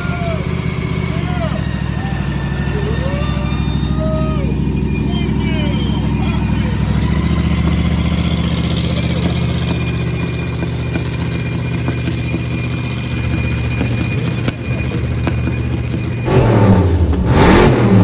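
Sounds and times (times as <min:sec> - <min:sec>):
car engine idling: 0:00.0 - 0:18.0.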